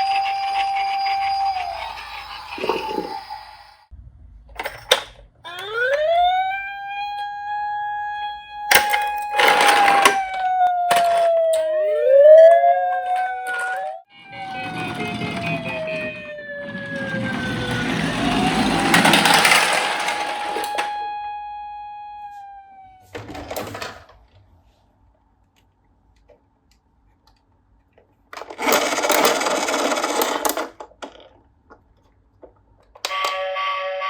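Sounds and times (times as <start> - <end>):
toy whirring rattle: 0.0 - 3.5, 17.2 - 20.8
electronic toy siren: 0.0 - 3.9, 5.4 - 23.7, 33.0 - 34.0.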